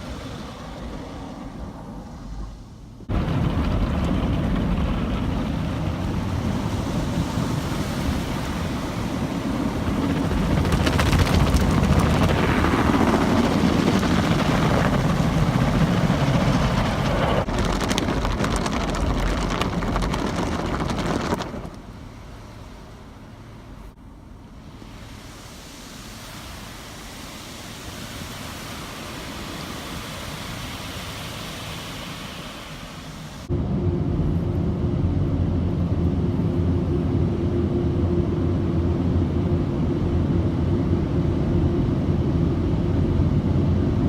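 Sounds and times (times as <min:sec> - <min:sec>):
car wash spraying water and air: 0:00.0 - 0:33.6.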